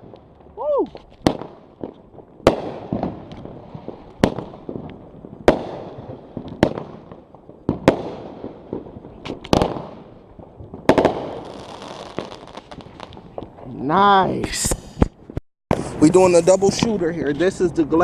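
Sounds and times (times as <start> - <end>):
firework bangs: 0.0 - 13.8, 14.5 - 17.1.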